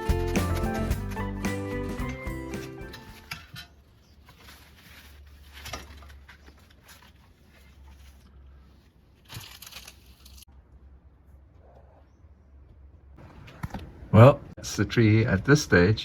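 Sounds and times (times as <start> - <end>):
branches and leaves crackling: 0.0 - 10.5.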